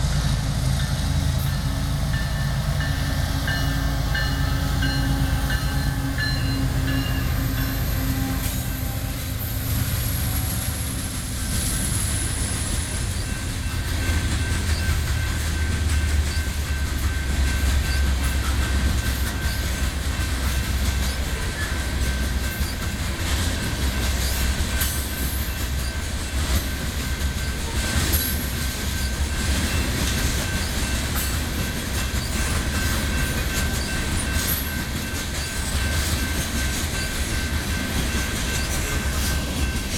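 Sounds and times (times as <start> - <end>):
train cars rumbling: 0.0 - 39.9
wheels clicking over rail joints: 12.9 - 39.9.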